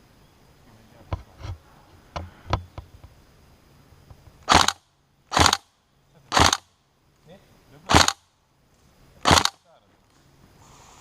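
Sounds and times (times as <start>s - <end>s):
airsoft rifle firing: 4.5s - 5.7s, 6.3s - 6.7s, 7.9s - 8.2s, 9.2s - 9.6s.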